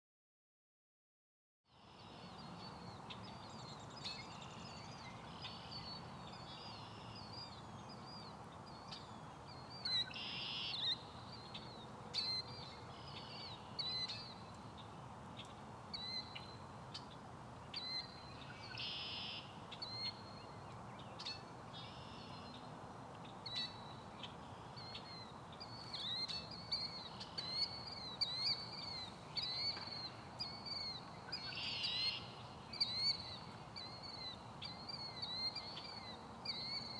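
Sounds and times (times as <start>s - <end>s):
blackbirds singing: 2.1s - 36.9s
shrill bird calls: 9.8s - 14.4s, 17.8s - 20.4s, 21.2s - 22.4s, 24.8s - 36.9s.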